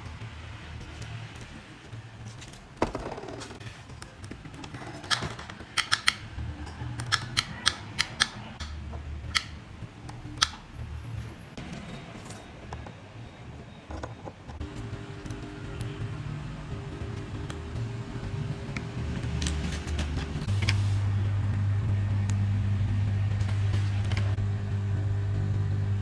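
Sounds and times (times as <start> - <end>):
sharp clicks and taps: 4.0 - 6.2, 7.0 - 9.6.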